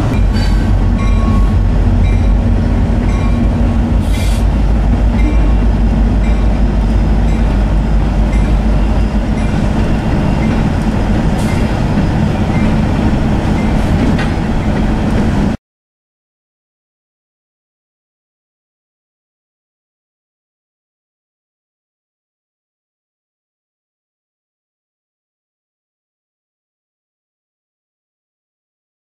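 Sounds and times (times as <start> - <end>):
freight train rumbling: 0.0 - 15.6
train clanks and clicks: 0.0 - 15.6.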